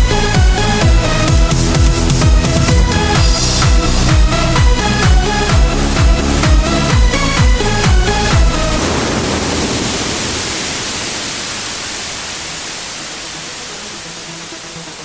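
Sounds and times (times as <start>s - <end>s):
electronic dance beat: 0.0s - 9.0s
white noise sweep hiss: 0.0s - 15.0s.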